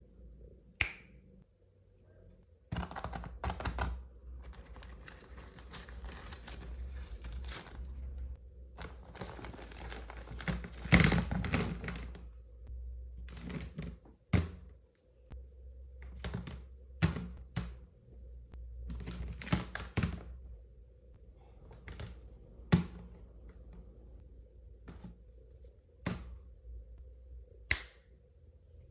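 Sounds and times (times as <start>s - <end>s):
packaging rustling: 4.4s - 12.1s.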